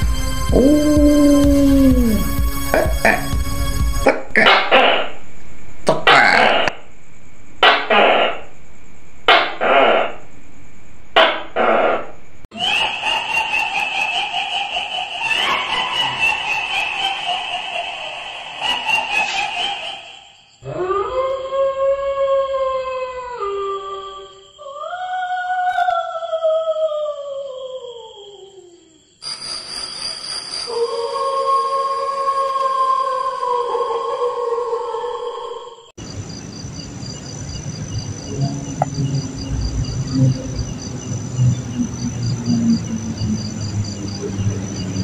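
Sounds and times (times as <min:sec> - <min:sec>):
crickets chirping: 0:00.0 - 0:45.0
dog howling: 0:00.5 - 0:03.2
hiss: 0:14.9 - 0:20.4, 0:29.2 - 0:31.0
low rumble: 0:36.1 - 0:45.0.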